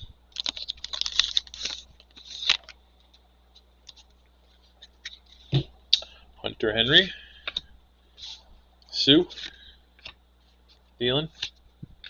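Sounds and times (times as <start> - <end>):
foil wrapper tearing and crinkling: 0.3 - 2.8
cards rustling and clicking: 0.4 - 5.5.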